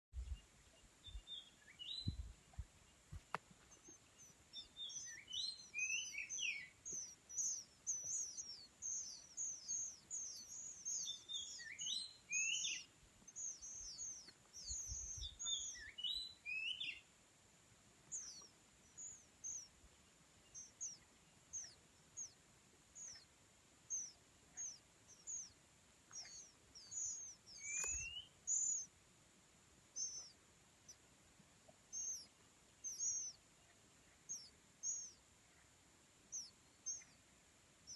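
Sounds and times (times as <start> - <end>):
faint low thuds: 2.0 - 3.7
bird singing high whistles: 4.6 - 17.0, 26.2 - 28.9, 31.9 - 33.4.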